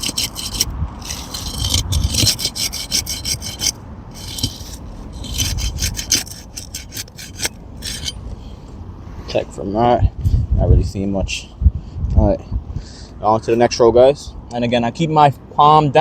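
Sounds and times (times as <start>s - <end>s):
pry bar scraping under shingle: 0.0s - 8.8s.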